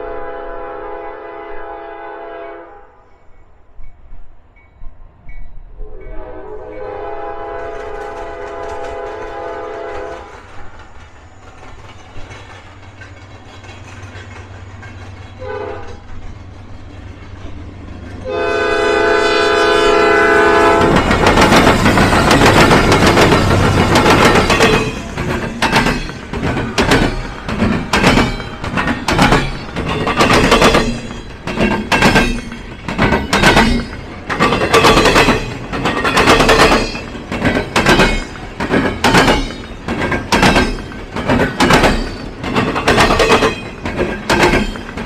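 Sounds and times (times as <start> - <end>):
locomotive horn: 0.0 - 3.0, 5.8 - 10.4, 15.4 - 16.1, 18.2 - 21.1
train passing close: 0.0 - 45.0.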